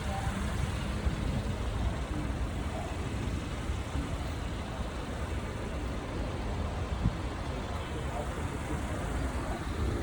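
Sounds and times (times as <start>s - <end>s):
low rumble of outdoor background: 0.0s - 10.0s.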